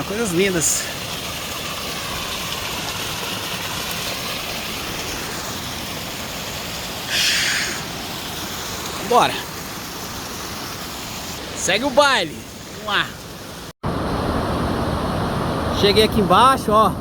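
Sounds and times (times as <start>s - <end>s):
river water rushing: 0.0s - 16.0s
burst of hiss: 7.1s - 8.0s.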